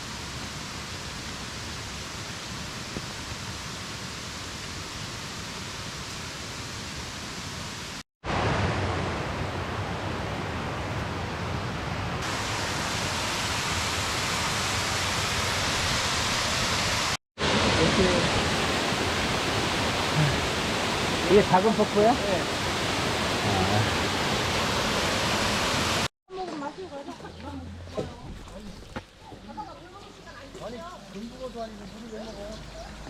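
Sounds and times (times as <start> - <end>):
stream water cascading: 0.0 - 26.1.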